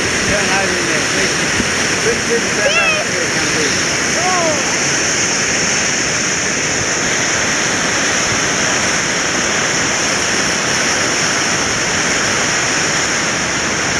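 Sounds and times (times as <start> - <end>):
floodwater roaring in river: 0.0 - 13.9.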